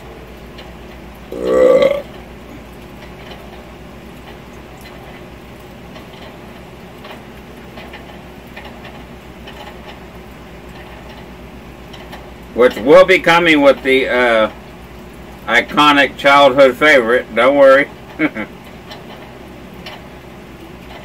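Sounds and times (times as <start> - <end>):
low background hum: 0.0 - 21.0
person burping: 1.3 - 2.1.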